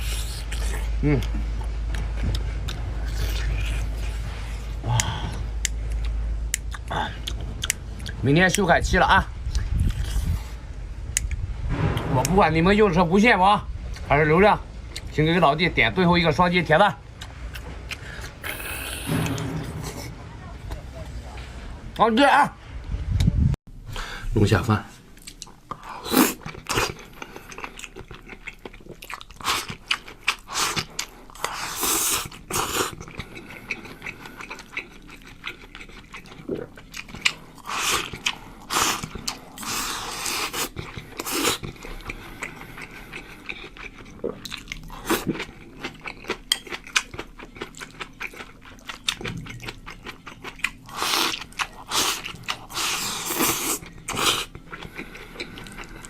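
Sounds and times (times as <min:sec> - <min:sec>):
person chewing and crunching: 0:00.0 - 0:08.7, 0:09.5 - 0:10.5, 0:25.2 - 0:56.0.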